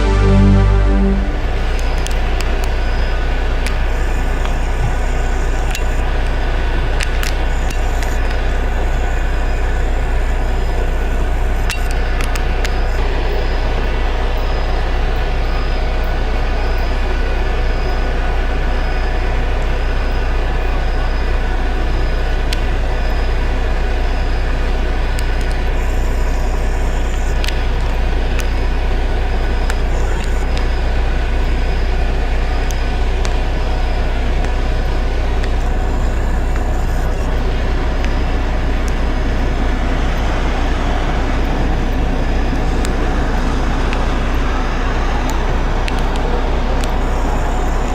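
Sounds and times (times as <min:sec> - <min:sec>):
short high beep: 0:00.0 - 0:01.9.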